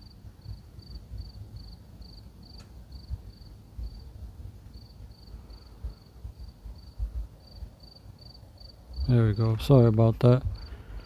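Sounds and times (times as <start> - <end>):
crickets chirping: 0.0 - 11.0
faint click: 2.6 - 2.8.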